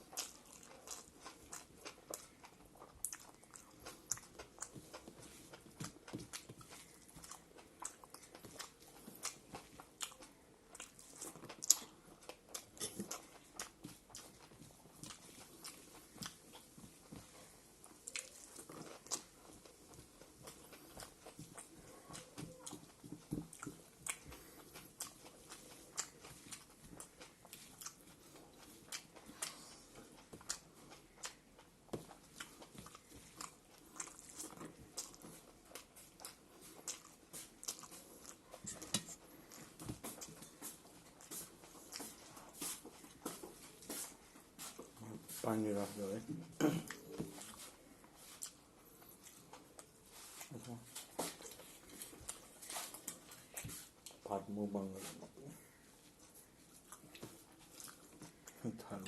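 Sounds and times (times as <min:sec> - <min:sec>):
person chewing food: 0:00.0 - 0:59.0.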